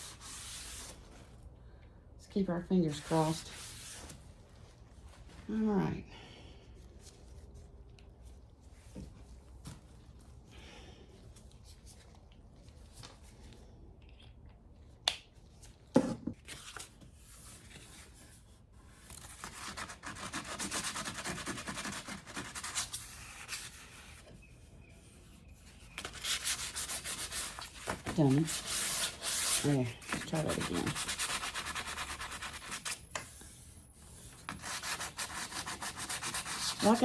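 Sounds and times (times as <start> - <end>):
sandpaper scratching laminate: 26.0 - 33.4, 34.2 - 37.0.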